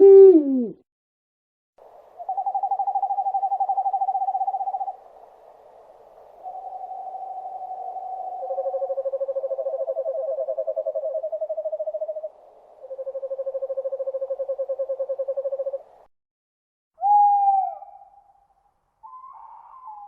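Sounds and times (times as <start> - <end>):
owl trilling: 2.2 - 5.0, 6.4 - 15.9, 17.0 - 18.3, 19.0 - 20.0.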